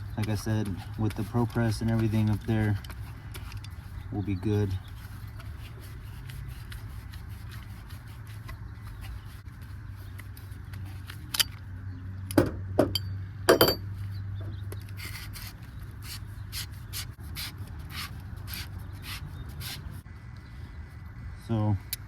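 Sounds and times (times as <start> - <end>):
metal clinks: 12.9 - 13.9
reamer scraping copper pipe: 14.8 - 20.0.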